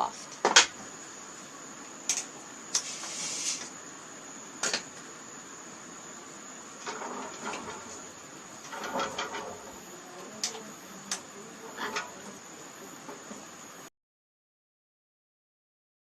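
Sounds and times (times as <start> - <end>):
steady high-pitched whine: 0.0 - 13.9
brief hiss: 2.1 - 3.8.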